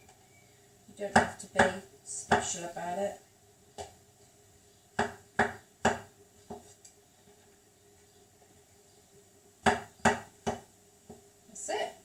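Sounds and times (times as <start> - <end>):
knife chopping on a board: 5.0 - 6.6.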